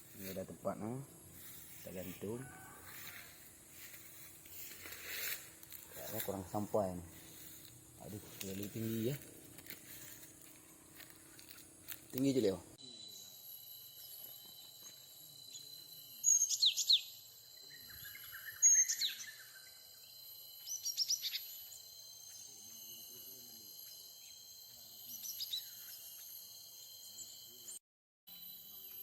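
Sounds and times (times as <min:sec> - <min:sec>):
songbird chirping: 0:00.0 - 0:13.3
high-pitched insect drone: 0:00.0 - 0:29.0.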